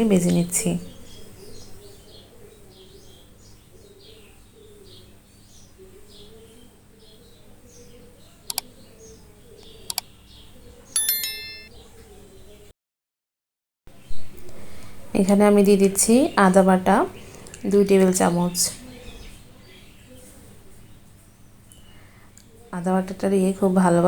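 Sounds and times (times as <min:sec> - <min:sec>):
birds chirping: 0:00.0 - 0:12.7, 0:15.3 - 0:23.3
sharp clicks: 0:08.5 - 0:08.7, 0:09.9 - 0:10.1
ringing chirp: 0:11.0 - 0:11.9.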